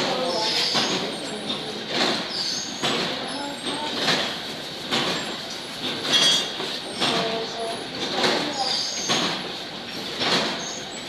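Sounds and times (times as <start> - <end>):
packaging machinery clattering: 0.0 - 11.0.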